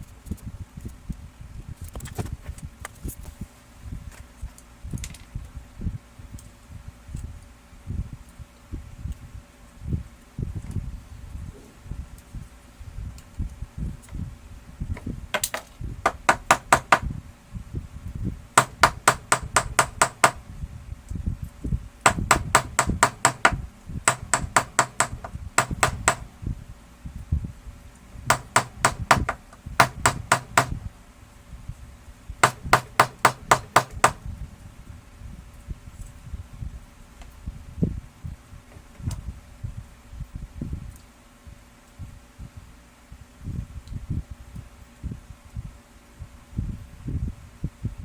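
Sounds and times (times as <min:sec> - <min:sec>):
low handling noise: 0:13.3 - 0:37.4
rapid sharp taps: 0:15.4 - 0:17.1, 0:18.6 - 0:20.4, 0:22.1 - 0:26.3, 0:28.3 - 0:30.9, 0:32.4 - 0:34.2.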